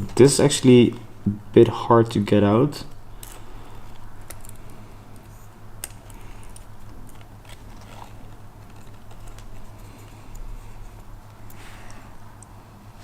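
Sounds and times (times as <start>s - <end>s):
low steady hum: 0.0s - 13.0s
metallic clicks and scratches: 3.2s - 10.5s.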